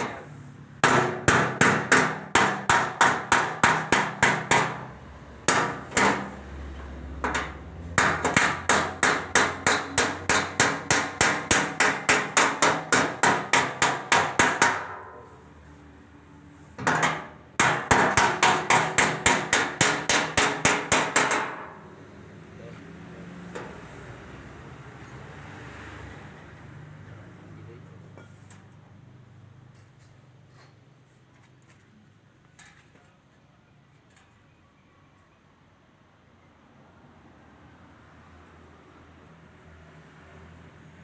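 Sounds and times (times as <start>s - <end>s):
hammer on sheet metal: 0.0s - 6.4s, 7.2s - 15.4s, 16.8s - 21.8s.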